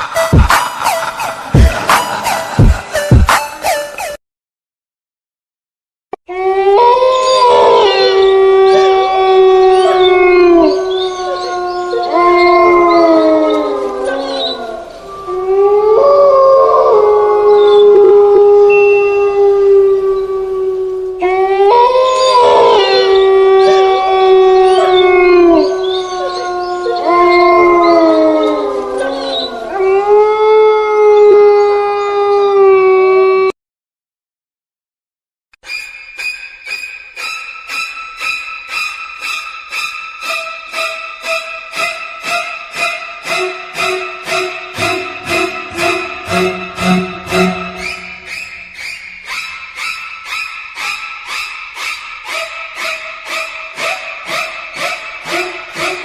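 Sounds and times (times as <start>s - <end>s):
ringtone of canine howls: 18.6s - 19.4s, 40.2s - 48.3s.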